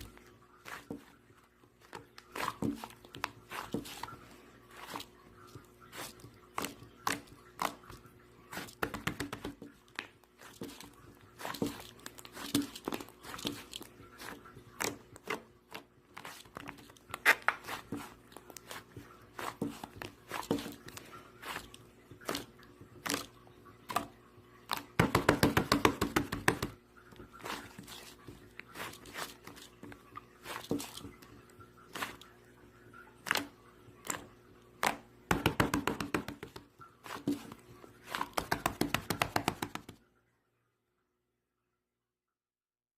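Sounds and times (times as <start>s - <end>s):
slime squished by hand: 8.5s - 23.3s.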